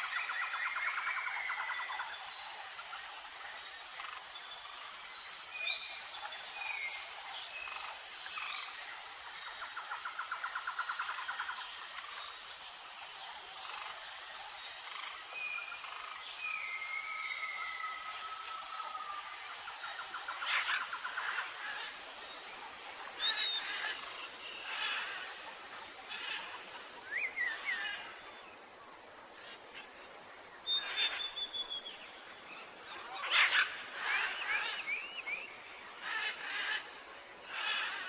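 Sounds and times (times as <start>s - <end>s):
insect drone: 0.0s - 38.0s
bird chirps and whistles: 30.7s - 31.8s.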